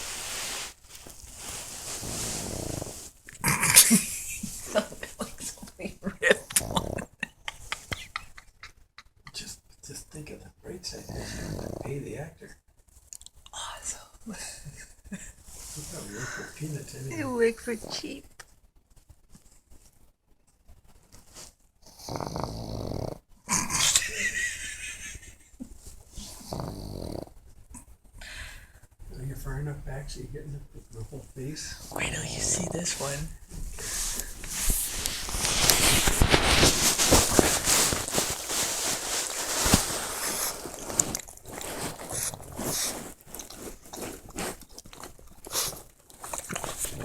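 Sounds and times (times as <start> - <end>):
dog snoring: 1.4 - 3.8, 6.4 - 8.0, 10.9 - 12.3, 21.8 - 24.0, 26.2 - 27.4, 31.6 - 47.0.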